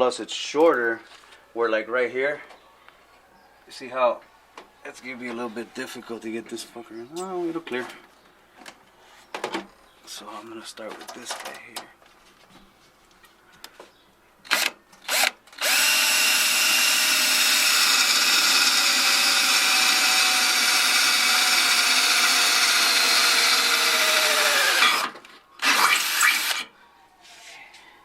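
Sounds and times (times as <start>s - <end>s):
power drill boring a hole: 14.5s - 26.7s.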